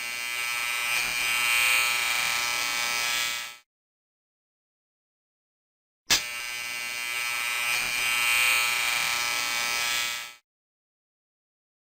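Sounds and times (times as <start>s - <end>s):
electric shaver buzzing: 0.0s - 3.7s, 6.1s - 10.4s.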